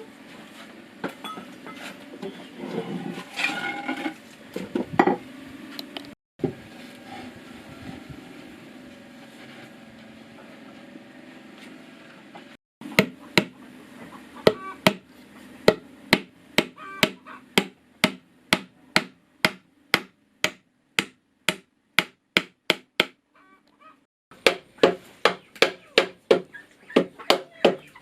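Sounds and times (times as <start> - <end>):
steady hum: 2.9 - 21.7
tool striking wood: 12.8 - 13.6, 14.4 - 23.2.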